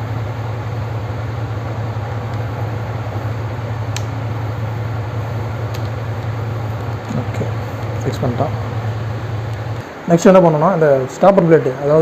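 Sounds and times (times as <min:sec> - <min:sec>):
low machine hum: 0:00.0 - 0:12.0
light click: 0:03.9 - 0:04.2.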